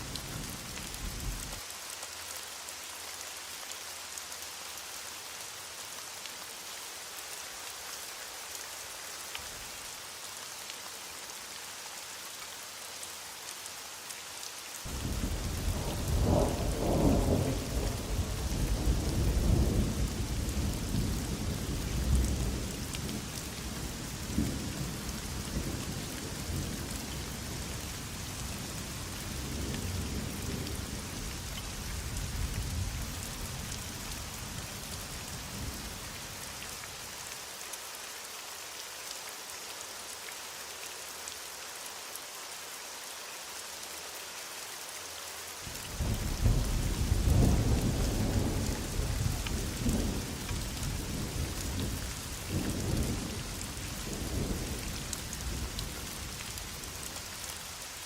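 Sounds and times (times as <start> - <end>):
heavy rain: 0.0 - 58.0
thunder rumbling: 14.9 - 21.1.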